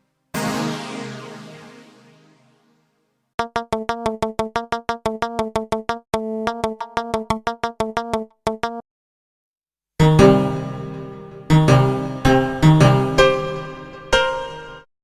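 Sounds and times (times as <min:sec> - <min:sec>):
organ staccato notes: 0:00.4 - 0:02.5.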